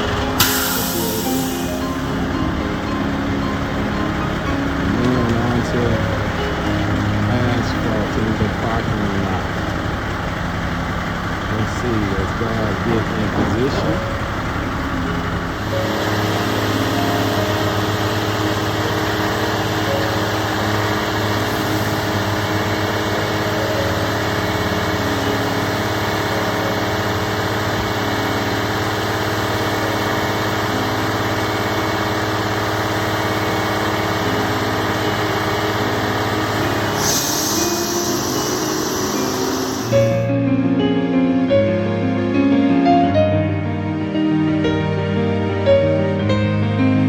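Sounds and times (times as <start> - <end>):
small engine running: 0.0 - 40.4
rising whine: 0.0 - 40.5
hiss: 0.4 - 2.0, 21.0 - 22.7, 36.7 - 40.3.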